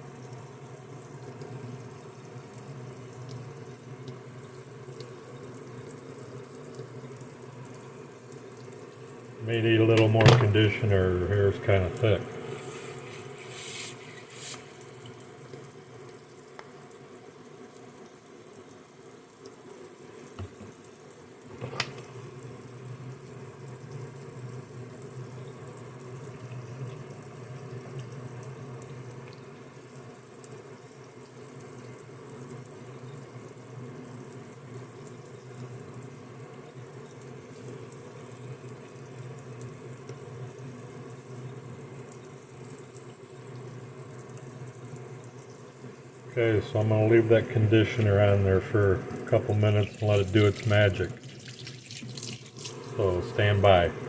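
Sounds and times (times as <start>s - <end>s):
tap water running into sink: 0.0s - 54.0s.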